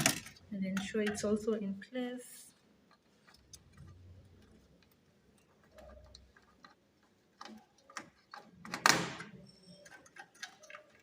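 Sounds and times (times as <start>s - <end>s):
plastic connectors clicking: 2.9s - 11.0s.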